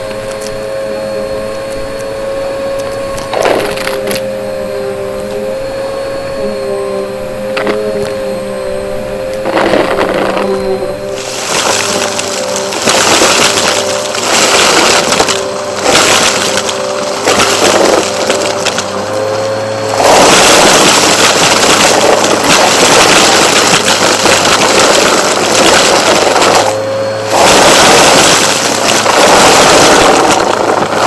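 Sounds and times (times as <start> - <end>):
vacuum cleaner running: 0.0 - 31.0.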